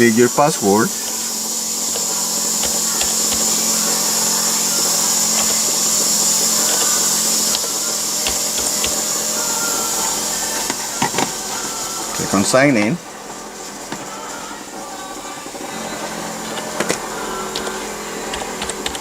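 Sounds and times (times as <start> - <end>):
air compressor humming and hissing: 0.0 - 19.0.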